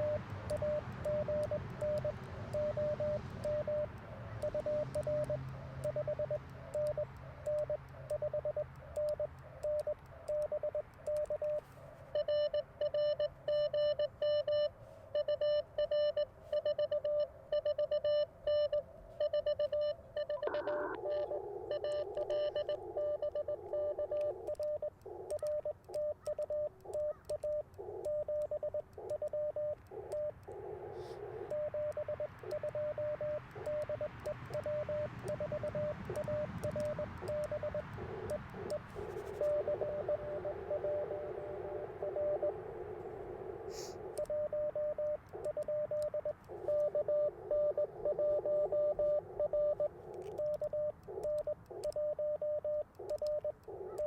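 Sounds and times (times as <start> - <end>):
morse code beeps: 0.0 - 54.0
buzzy radio signal: 20.4 - 24.5, 36.1 - 49.8.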